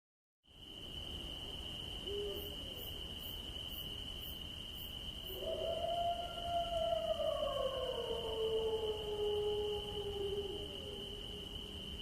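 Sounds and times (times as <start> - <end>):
cricket trill: 0.5 - 12.0
owl hoot: 2.0 - 2.8.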